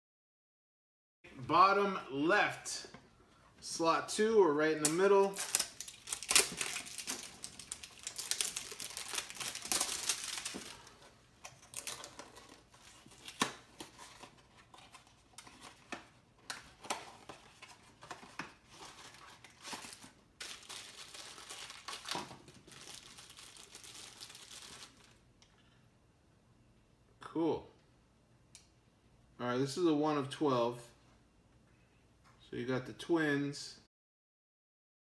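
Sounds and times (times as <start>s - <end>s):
packaging crinkling: 5.2s - 25.2s.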